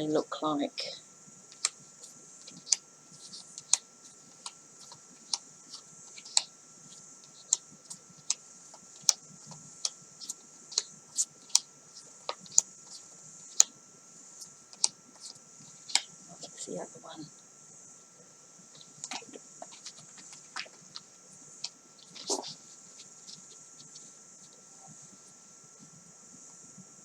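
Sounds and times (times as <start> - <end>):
steady hiss: 0.0 - 27.0
cards clicking and tapping: 1.5 - 13.8, 14.4 - 16.2, 18.7 - 24.6.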